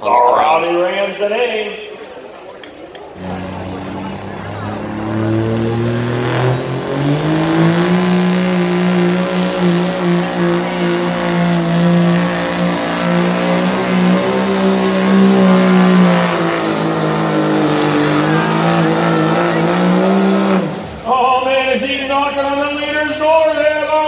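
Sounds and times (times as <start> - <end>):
diesel truck engine at high revs: 3.1 - 21.6.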